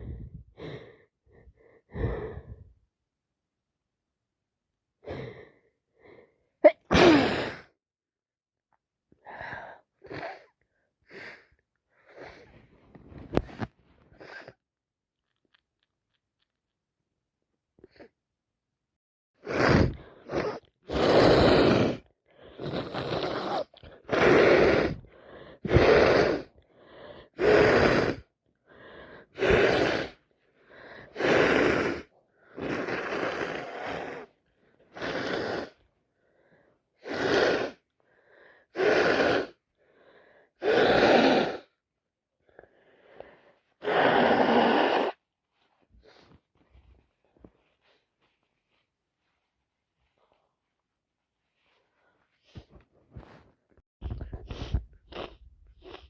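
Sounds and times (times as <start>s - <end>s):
person blowing congested nose: 6.7s - 7.8s, 9.3s - 12.6s, 13.3s - 14.6s, 19.4s - 35.9s, 36.5s - 41.8s, 42.6s - 45.3s, 54.1s - 56.0s.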